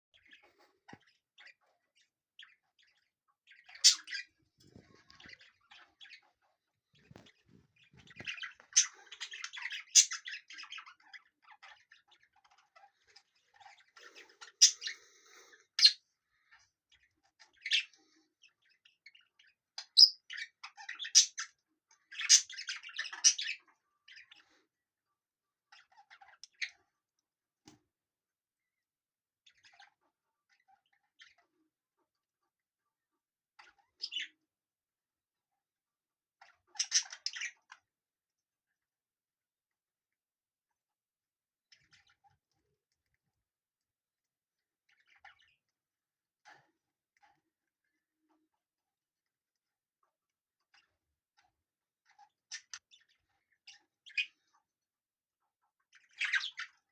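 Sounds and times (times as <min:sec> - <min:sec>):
budgerigar chirping and warbling: 0:02.4 - 0:06.4, 0:07.0 - 0:16.6, 0:18.7 - 0:24.5, 0:33.6 - 0:34.4, 0:36.4 - 0:37.8, 0:52.2 - 0:54.5, 0:56.0 - 0:56.9.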